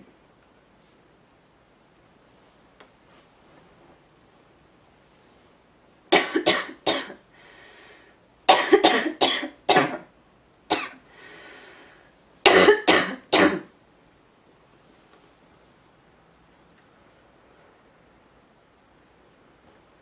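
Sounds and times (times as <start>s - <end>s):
woman coughing: 6.1s - 7.2s, 8.5s - 10.1s, 10.7s - 11.0s, 12.5s - 13.7s
drawn-in breaths: 7.3s - 8.2s, 11.1s - 12.2s.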